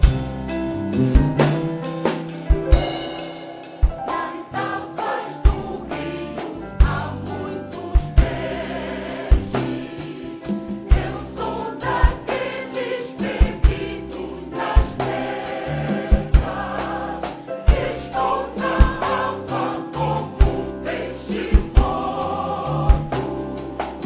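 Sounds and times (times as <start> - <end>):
band accompaniment: 0.0 - 24.0
gospel choir singing: 0.0 - 24.0
low drum thumps: 10.9 - 11.4, 14.8 - 17.1, 17.7 - 19.4, 20.4 - 23.4.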